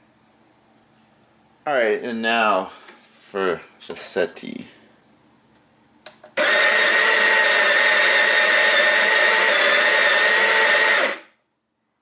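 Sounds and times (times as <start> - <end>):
coffee grinder motor whine: 6.4 - 11.3.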